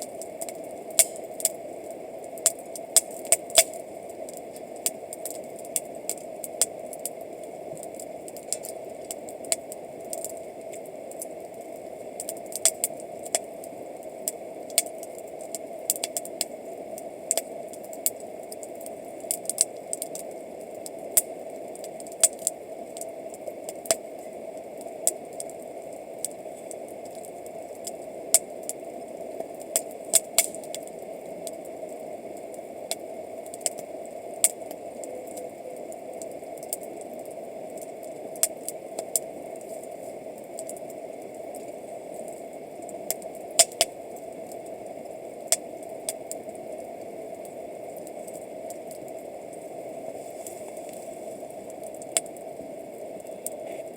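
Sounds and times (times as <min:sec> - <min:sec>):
campfire crackling and popping: 0:00.0 - 0:53.9
steady fire hiss: 0:00.0 - 0:53.9.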